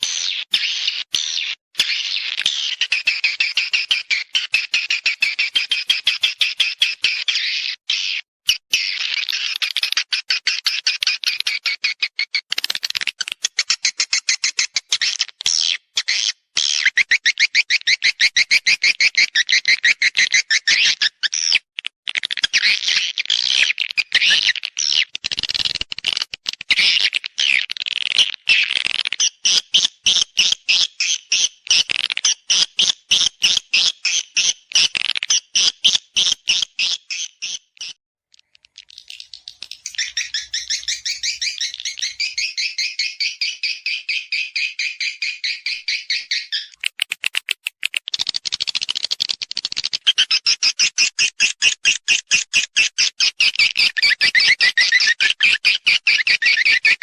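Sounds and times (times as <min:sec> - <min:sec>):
high swiftlet chirps: 0:38.9 - 0:42.5
quick clicks: 0:46.6 - 0:50.0.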